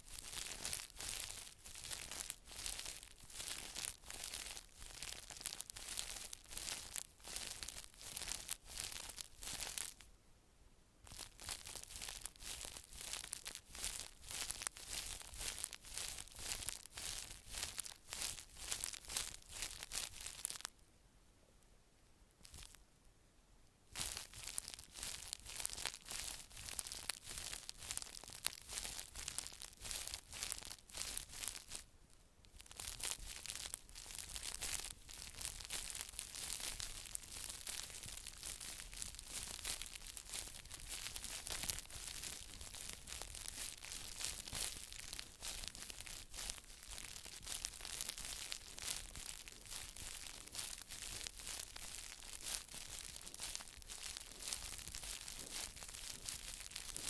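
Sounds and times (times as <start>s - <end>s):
crinkling and scratching: 0.0s - 10.0s, 11.0s - 20.7s, 22.4s - 22.8s, 23.9s - 31.9s, 32.5s - 57.0s.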